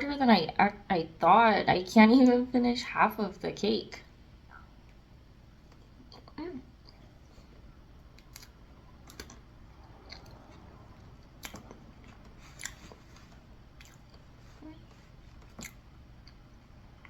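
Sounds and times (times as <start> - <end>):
low steady hum: 0.0 - 17.0
wet mouth chewing smacks: 8.1 - 13.0, 13.8 - 14.3.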